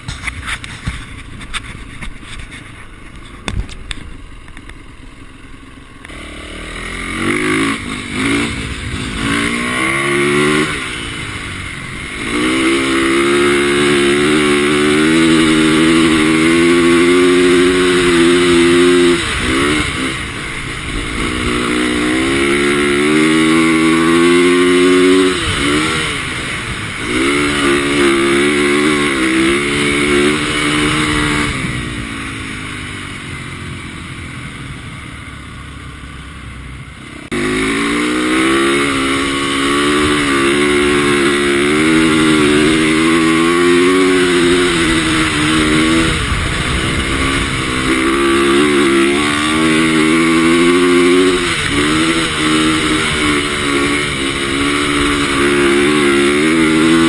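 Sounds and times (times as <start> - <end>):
dirt bike engine revving: 4.9 - 35.7, 36.8 - 57.0.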